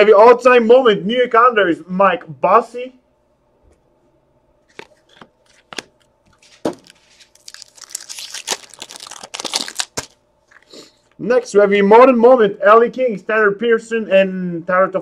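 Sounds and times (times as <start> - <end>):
foil wrapper crinkling and tearing: 6.3 - 10.7
cards clicking and snapping: 6.7 - 10.2.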